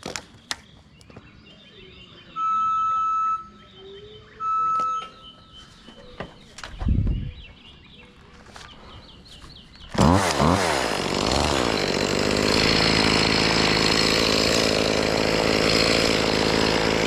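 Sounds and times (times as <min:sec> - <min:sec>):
birds chirping: 0:00.1 - 0:10.4
electronic beeps: 0:02.3 - 0:05.6.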